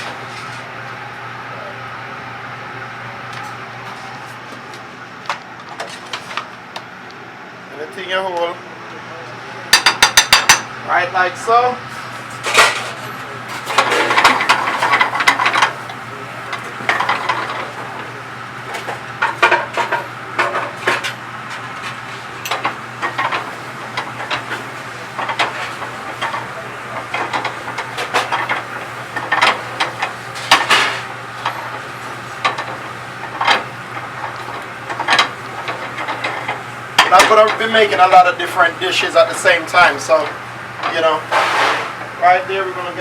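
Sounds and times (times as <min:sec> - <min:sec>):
steady low hum: 0:00.0 - 0:43.0
utensils clattering on pots: 0:09.8 - 0:10.6, 0:12.3 - 0:18.1, 0:18.7 - 0:42.0.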